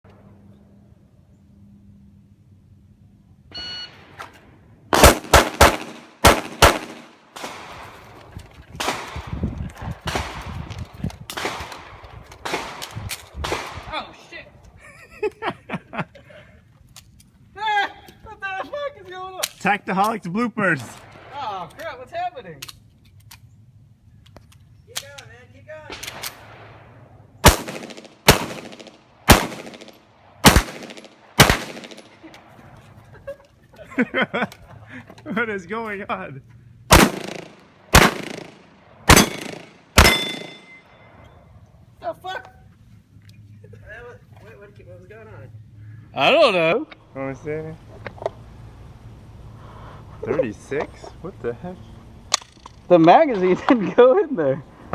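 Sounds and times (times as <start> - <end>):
short electronic beep: 3.5 - 4.0
gunshots: 4.9 - 8.0, 8.8 - 9.4, 11.4 - 13.9, 25.9 - 32.2, 36.9 - 40.8.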